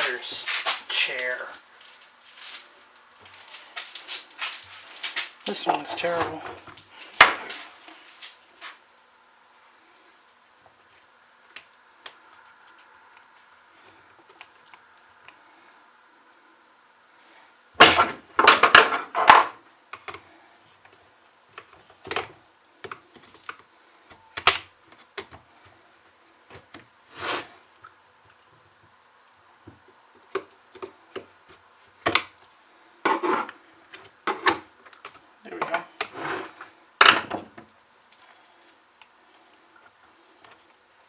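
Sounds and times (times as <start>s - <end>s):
tools clattering on workbench: 17.8s - 19.6s.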